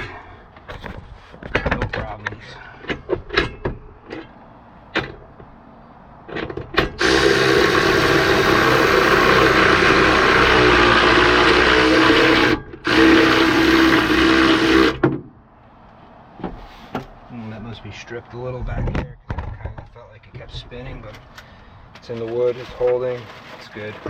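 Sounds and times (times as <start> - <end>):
cordless power tool running: 7.0 - 15.0.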